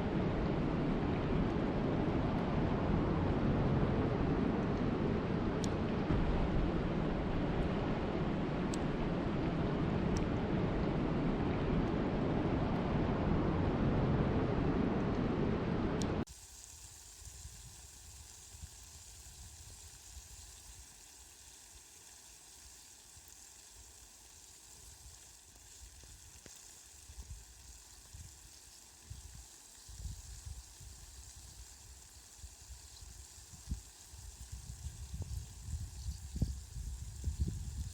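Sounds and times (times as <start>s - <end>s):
heavy rain: 0.0s - 14.8s
light rain hiss: 0.0s - 15.4s, 16.2s - 37.9s
low rumbles: 0.0s - 16.3s.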